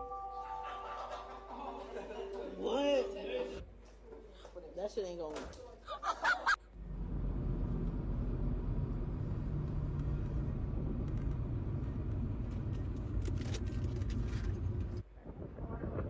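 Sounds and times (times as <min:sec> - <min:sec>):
low rumble: 0:06.7 - 0:16.0.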